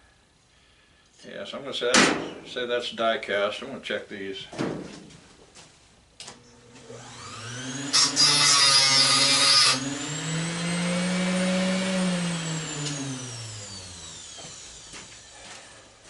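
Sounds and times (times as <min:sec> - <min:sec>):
electric grinder grinding metal: 0:06.8 - 0:15.3.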